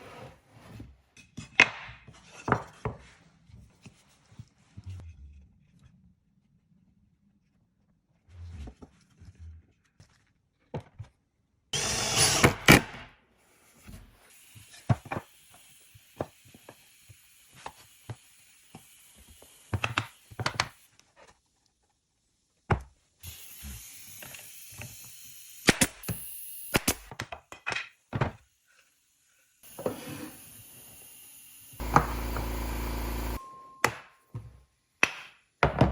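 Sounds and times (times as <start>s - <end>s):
power tool running: 11.8s - 12.7s, 23.2s - 27.1s, 29.6s - 33.4s.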